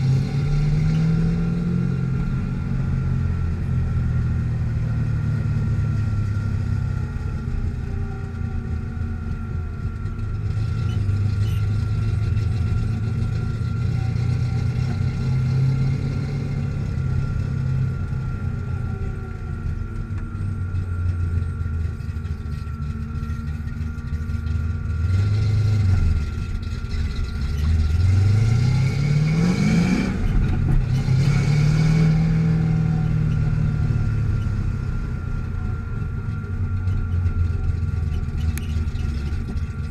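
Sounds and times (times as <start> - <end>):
car engine revving: 8.8 - 39.9.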